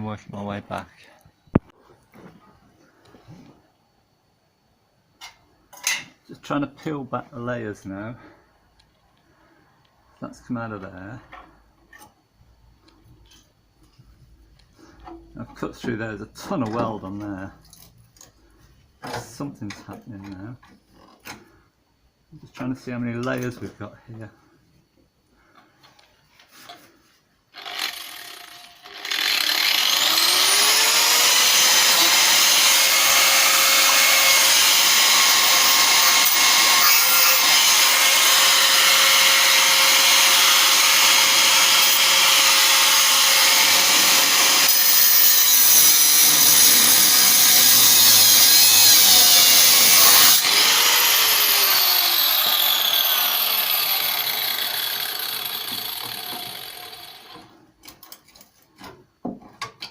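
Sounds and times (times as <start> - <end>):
angle grinder cutting steel: 27.6 - 57.5.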